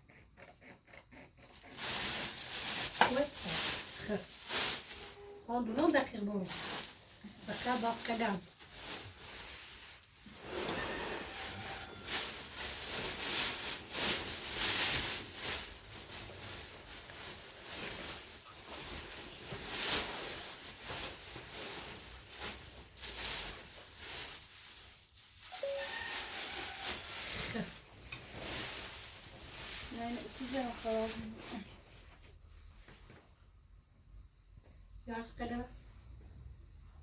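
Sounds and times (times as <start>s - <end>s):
rustling and rubbing of handling: 1.4s - 33.6s.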